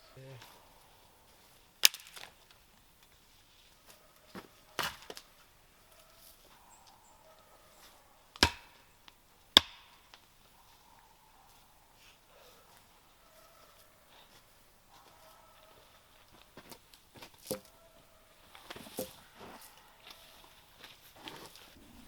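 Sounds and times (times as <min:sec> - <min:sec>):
wood chopping blows: 0:08.4 - 0:08.9.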